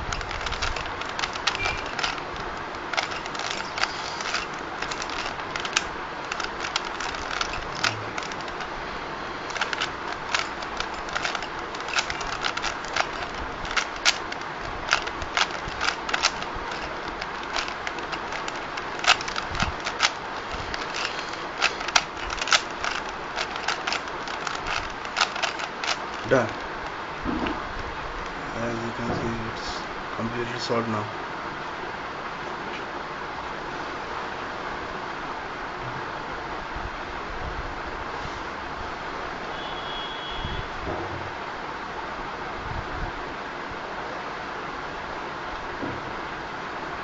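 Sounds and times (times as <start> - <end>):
puzzle cube layers clicking: 0.0 - 8.8, 9.4 - 26.9
steady background hiss: 0.0 - 47.0.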